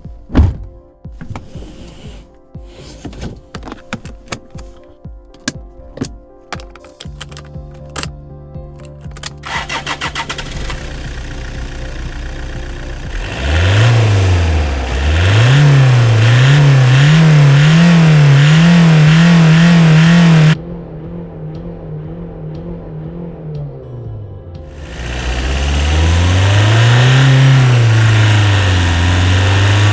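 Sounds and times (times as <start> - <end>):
diesel engine revving: 9.5 - 20.6, 24.7 - 29.9.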